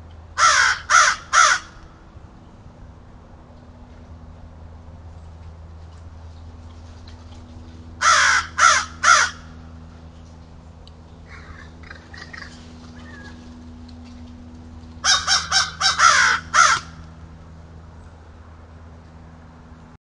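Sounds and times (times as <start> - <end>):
steady low hum: 0.0 - 20.0
harsh bird calls: 11.2 - 13.6, 15.0 - 17.1.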